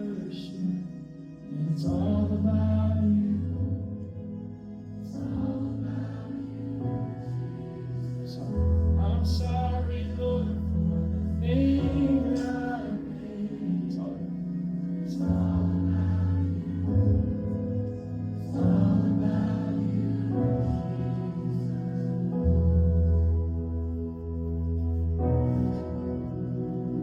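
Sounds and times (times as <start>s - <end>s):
voices singing: 0.0s - 23.7s
worship music chords and bass: 0.0s - 27.0s.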